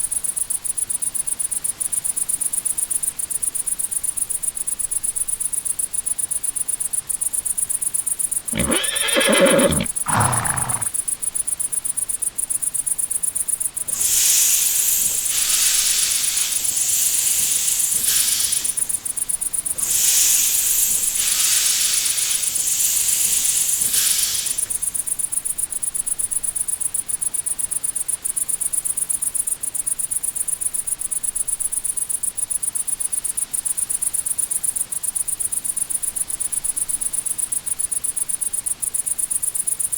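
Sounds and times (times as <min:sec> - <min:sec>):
horse whinnying: 0:08.5 - 0:10.9
loud hiss: 0:08.5 - 0:10.9, 0:13.8 - 0:25.1
crickets chirping: 0:08.5 - 0:11.0, 0:11.6 - 0:29.1.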